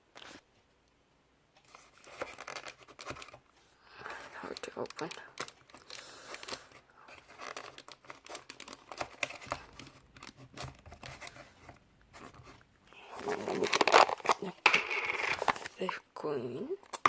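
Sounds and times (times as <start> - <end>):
plastic packaging crinkling: 1.7 - 16.0.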